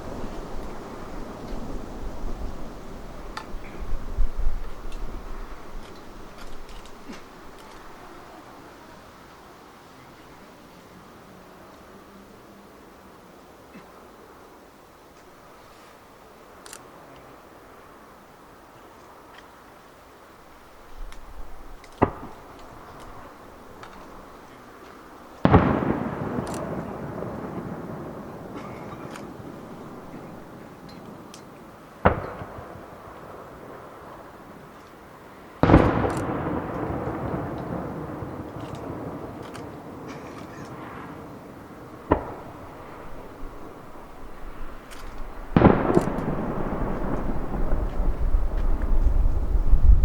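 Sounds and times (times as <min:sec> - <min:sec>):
firework shells bursting: 0:21.0 - 0:50.0
rumbling echo: 0:35.6 - 0:50.0.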